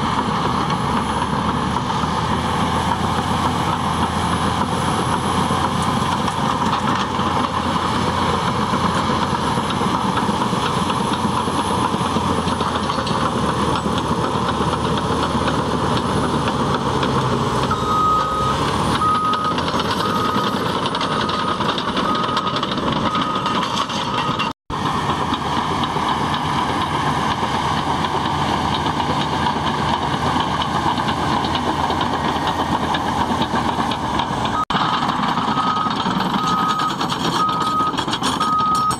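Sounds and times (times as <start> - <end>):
bulldozer diesel engine running: 0.0 - 38.9
reverse alarm beeps: 17.7 - 24.5, 35.5 - 38.9.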